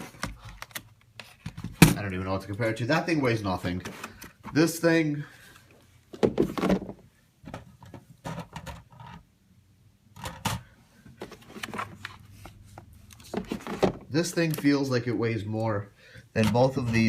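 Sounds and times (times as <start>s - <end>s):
keyboards being handled: 6.1s - 9.3s, 10.1s - 14.9s, 16.4s - 17.0s.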